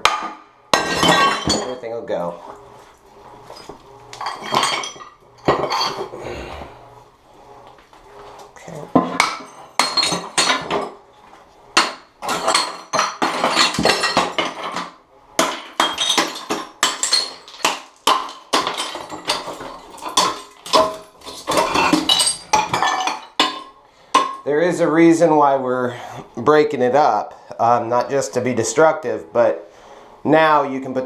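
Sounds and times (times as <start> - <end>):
shards cracking and clinking: 0.0 - 1.8, 3.4 - 6.2, 8.6 - 11.0, 11.8 - 24.5.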